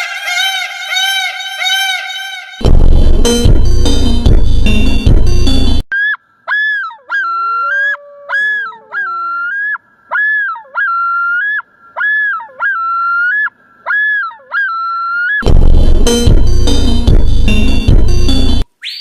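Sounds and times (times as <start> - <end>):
bird whistling call: 18.8 - 19.0.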